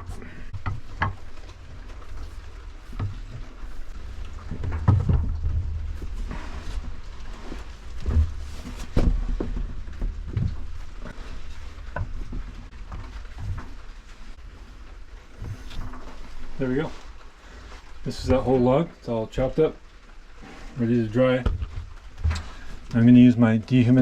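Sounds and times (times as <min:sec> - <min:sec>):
steady low rumble: 0:00.0 - 0:15.8
wood pieces knocking and thudding: 0:00.0 - 0:17.2.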